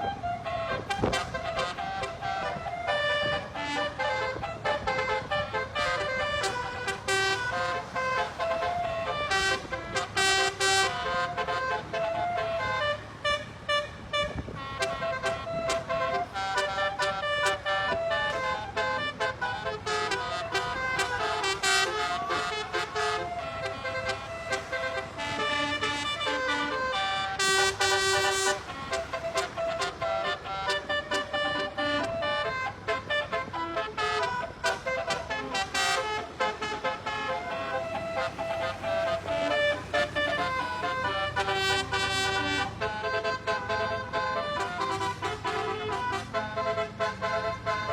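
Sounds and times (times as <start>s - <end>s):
multi-tone horn melody: 0.0s - 47.9s.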